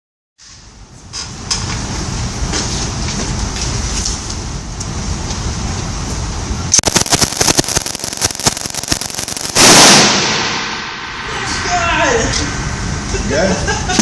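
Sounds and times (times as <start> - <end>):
low steady rumble: 0.6 - 14.0
machine gun firing bursts: 6.8 - 10.2.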